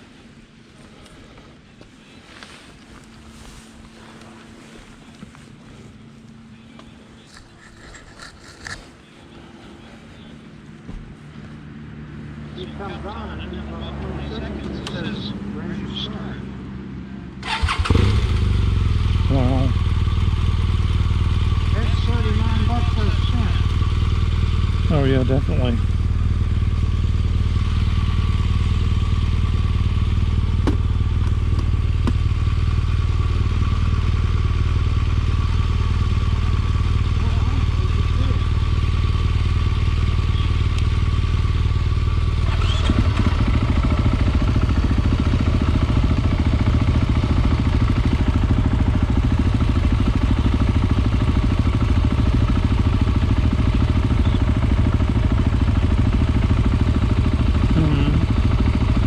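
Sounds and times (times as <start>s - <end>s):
motorcycle engine idling: 17.4s - 59.0s.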